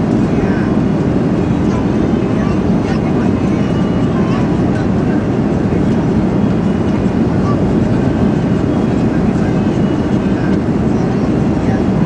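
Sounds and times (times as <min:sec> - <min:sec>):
airflow over fuselage: 0:00.0 - 0:12.0
airliner cabin engine rumble: 0:00.0 - 0:12.0.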